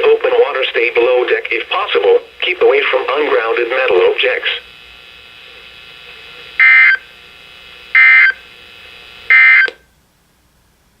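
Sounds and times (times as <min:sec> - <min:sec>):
faint steady buzz: 0:00.0 - 0:11.0
screeching data tone bursts: 0:06.6 - 0:07.1, 0:07.9 - 0:08.4, 0:09.3 - 0:09.8.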